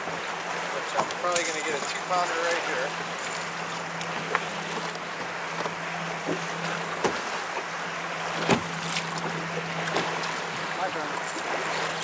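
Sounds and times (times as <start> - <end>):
low engine hum: 0.0 - 12.0
water washing: 0.0 - 12.0.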